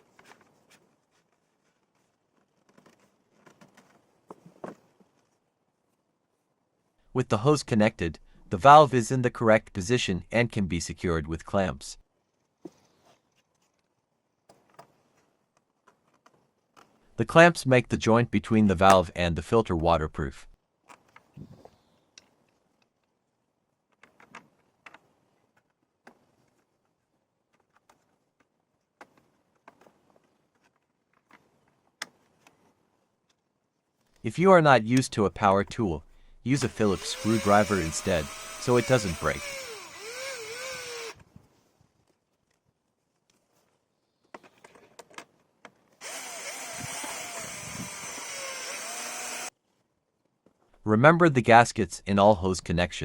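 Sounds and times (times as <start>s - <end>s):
faint plastic parts clicking: 12.4s - 17.2s, 20.8s - 34.3s, 41.0s - 47.6s
power drill driving screw: 36.5s - 41.2s, 46.0s - 49.5s.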